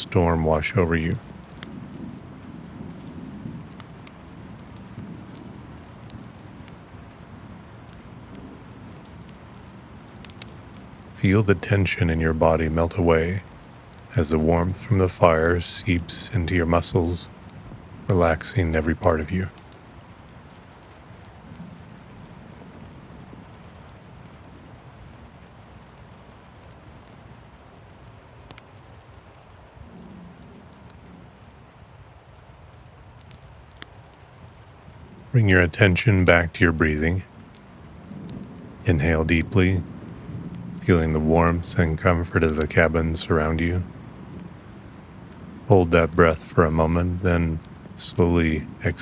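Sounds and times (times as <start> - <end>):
steady rain hiss: 0.0 - 49.0
small ticks: 1.2 - 11.2, 19.5 - 35.3, 37.3 - 38.8
faint sharp ticks: 10.2 - 10.8, 28.5 - 29.6, 32.9 - 35.2.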